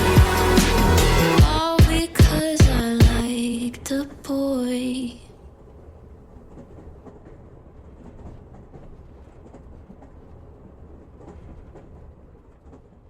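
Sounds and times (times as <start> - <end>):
low rumbling noise: 0.0 - 3.8.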